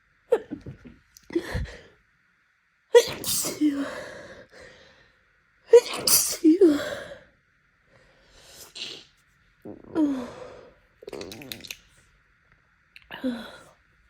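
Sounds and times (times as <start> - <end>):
woman sneezing: 3.0 - 3.9, 5.8 - 6.9.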